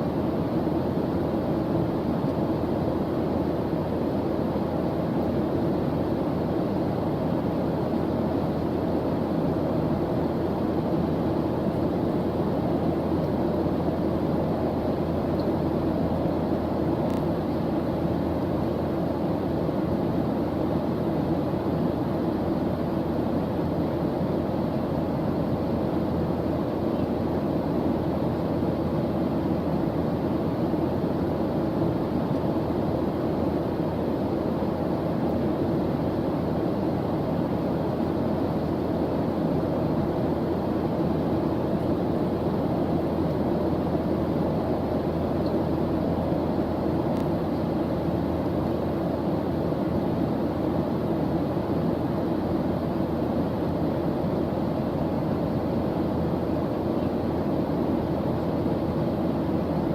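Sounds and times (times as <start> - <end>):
white noise hiss: 0.0 - 59.9.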